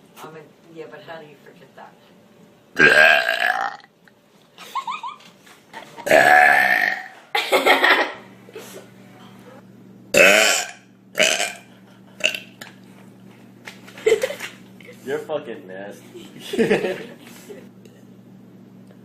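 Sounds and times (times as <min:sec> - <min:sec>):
loud burps: 0:02.8 - 0:03.9, 0:06.0 - 0:07.2, 0:10.1 - 0:12.6.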